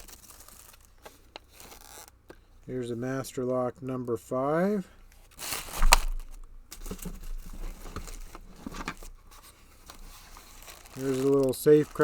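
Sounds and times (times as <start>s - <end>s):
packing material rustling: 0.0s - 2.2s, 5.2s - 12.0s.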